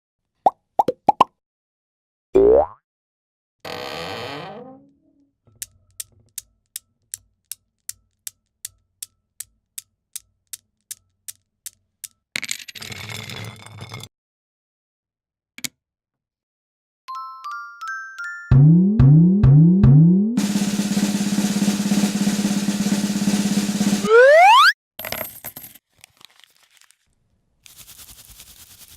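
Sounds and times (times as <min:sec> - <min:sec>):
rising ding-like notes: 0:18.5 - 0:20.4, 0:24.0 - 0:24.7
noisy burst: 0:18.5 - 0:24.7.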